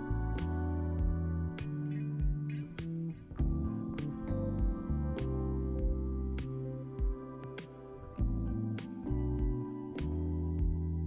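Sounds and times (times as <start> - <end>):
mellow chords with light beat: 0.0 - 11.0.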